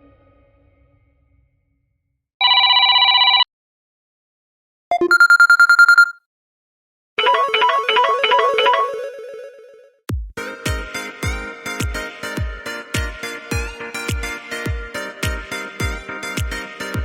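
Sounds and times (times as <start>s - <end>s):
trilling phone ring: 2.4s - 3.4s, 4.9s - 6.2s
melodic phone tone: 4.9s - 6.2s, 7.2s - 9.7s.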